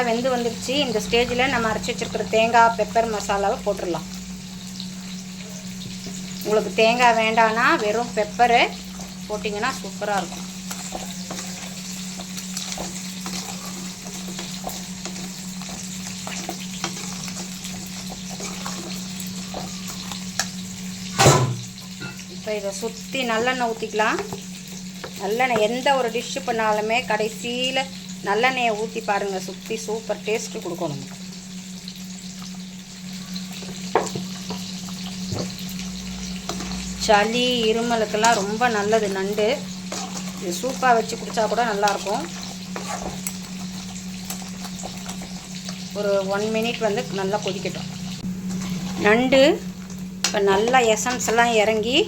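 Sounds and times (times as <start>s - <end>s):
crab sizzling and bubbling in pan: 0.0s - 52.0s
spoon stirring and scraping: 8.9s - 20.6s, 23.4s - 25.7s, 33.6s - 37.1s, 37.7s - 46.0s, 47.9s - 50.8s.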